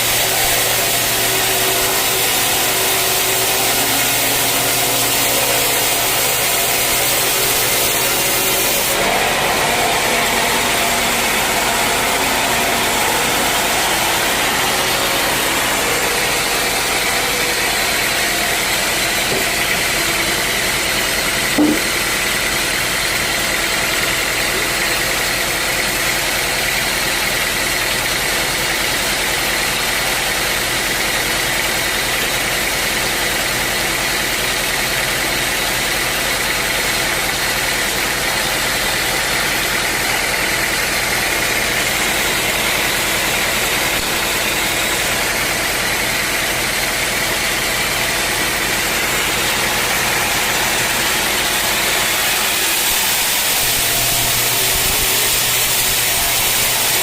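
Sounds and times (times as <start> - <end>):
high-pitched whine: 0.0 - 21.9, 41.0 - 57.0
sawmill machinery humming: 0.0 - 57.0
short knock: 21.6 - 22.0.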